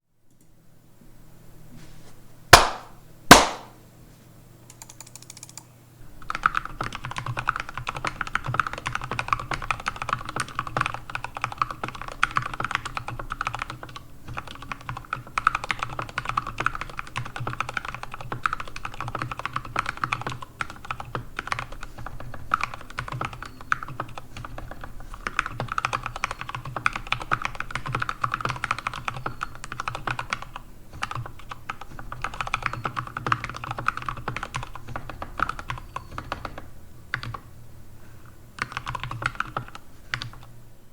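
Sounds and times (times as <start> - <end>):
sharp knock: 2.6 - 3.7
mechanical keyboard typing: 4.7 - 37.5, 38.6 - 40.5.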